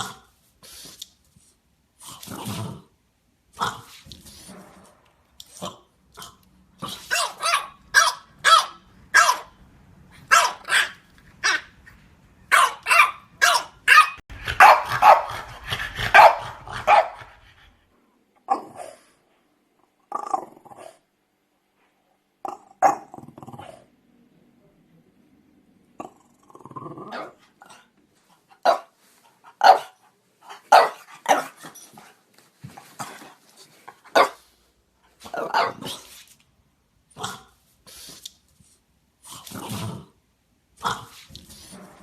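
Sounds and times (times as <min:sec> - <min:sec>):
dog barking: 0:07.1 - 0:09.6, 0:10.3 - 0:11.7, 0:12.5 - 0:17.3, 0:28.6 - 0:28.9, 0:29.6 - 0:30.0, 0:30.6 - 0:31.5, 0:34.1 - 0:34.4, 0:35.3 - 0:35.9.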